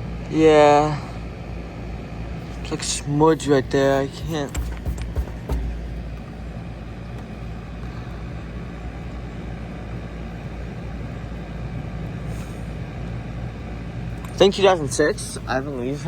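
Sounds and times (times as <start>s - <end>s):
heat pump unit humming: 0.0s - 16.0s
brief knock: 4.2s - 6.2s.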